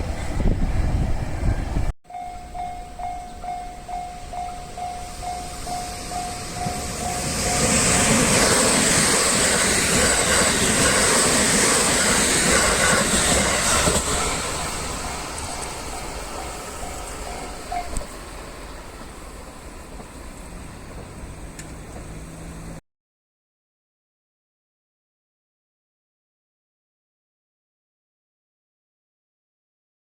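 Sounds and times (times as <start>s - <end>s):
crossing warning bell ringing: 0.0s - 10.8s, 13.5s - 20.7s
train passing: 0.0s - 22.8s.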